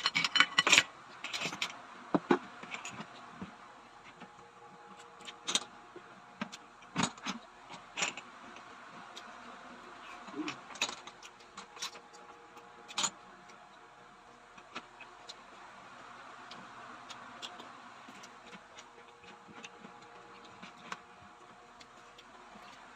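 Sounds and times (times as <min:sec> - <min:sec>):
shells and utensils clinking on dishes: 0:00.0 - 0:01.7, 0:10.4 - 0:13.2
faint steady hum: 0:00.0 - 0:22.9.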